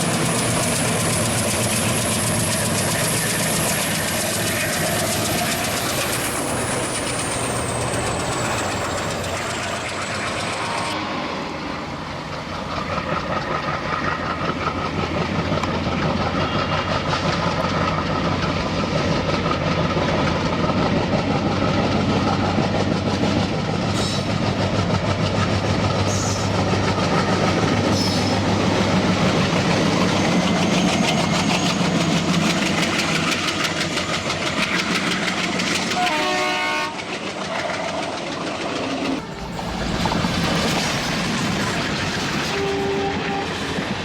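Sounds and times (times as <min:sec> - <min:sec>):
train wheels rattling on rails: 0:00.0 - 0:44.0.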